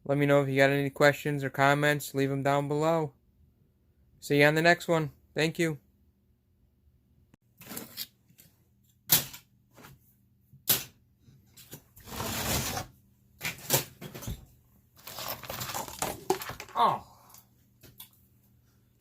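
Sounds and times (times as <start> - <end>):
objects knocking and clattering: 15.9 - 16.8.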